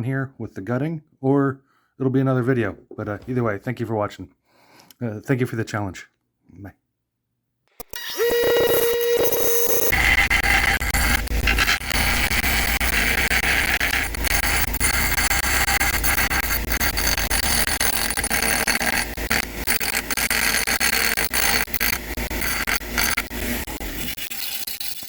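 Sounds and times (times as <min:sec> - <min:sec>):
power grinder grinding metal: 0:07.8 - 0:25.0.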